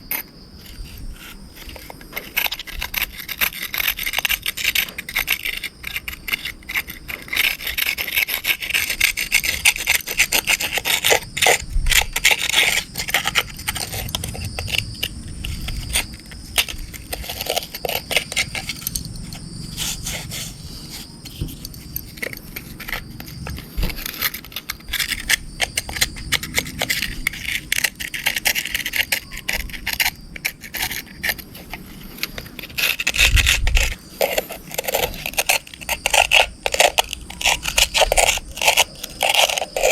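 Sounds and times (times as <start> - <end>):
scrubbing and scraping strokes: 0.1 - 39.9.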